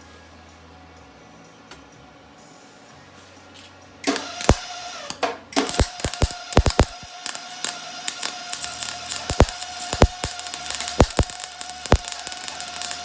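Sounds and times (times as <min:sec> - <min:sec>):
arc welding crackle: 0:04.1 - 0:13.0
welder hum: 0:04.1 - 0:13.0.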